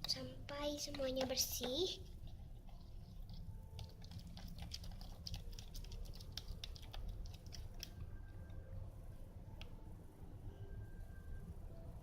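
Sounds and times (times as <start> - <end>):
slime squelching as stirred: 0.0 - 8.8
low steady hum: 0.0 - 12.0.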